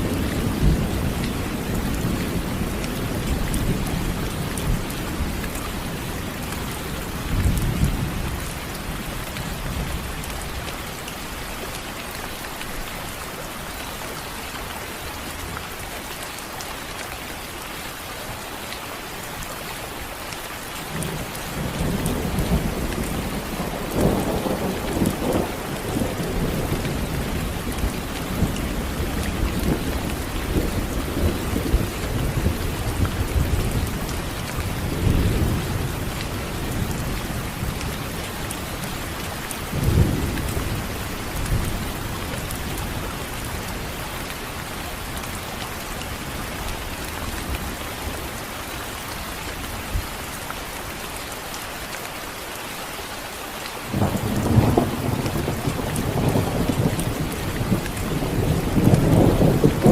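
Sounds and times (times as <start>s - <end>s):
steady rain falling: 0.0s - 59.9s
thunder rumbling: 21.0s - 38.2s, 53.9s - 59.9s.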